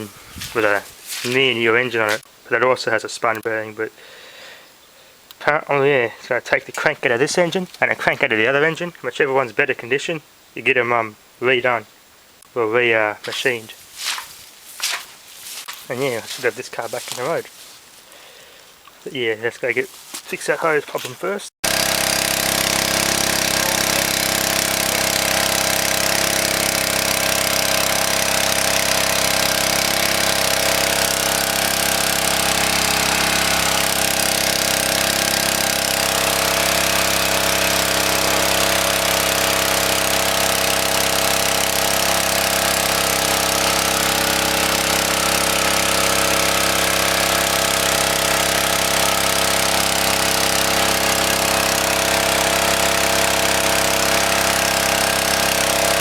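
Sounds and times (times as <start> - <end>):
engine-driven water pump running: 0.0 - 2.3, 13.2 - 18.0, 21.6 - 56.0.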